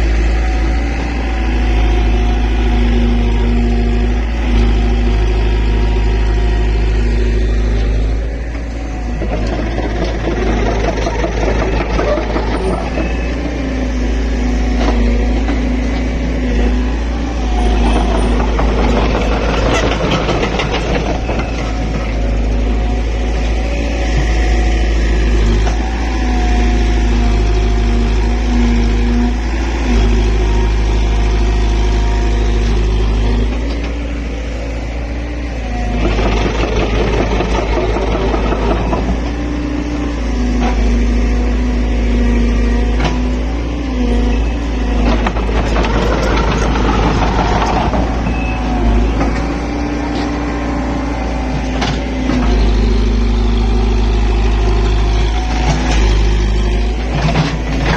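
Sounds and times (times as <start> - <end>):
excavator diesel engine: 0.0 - 57.9
loud clatter: 9.1 - 13.4, 17.7 - 22.1, 35.9 - 39.4, 44.9 - 49.5.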